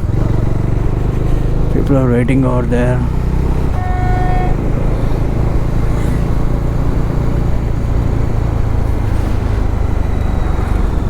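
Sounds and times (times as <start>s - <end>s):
motorcycle engine rumble: 0.0s - 11.0s
road and wind noise: 0.0s - 11.0s.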